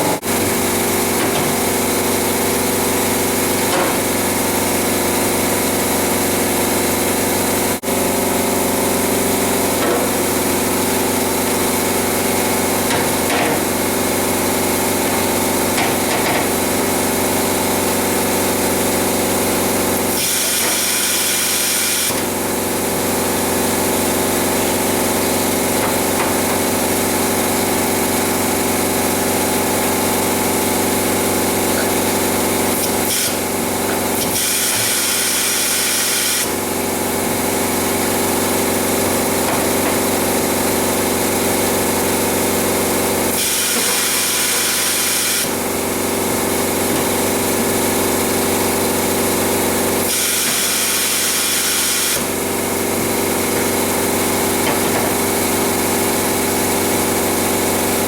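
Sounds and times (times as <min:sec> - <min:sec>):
workshop machinery hum: 0:00.0 - 0:58.0.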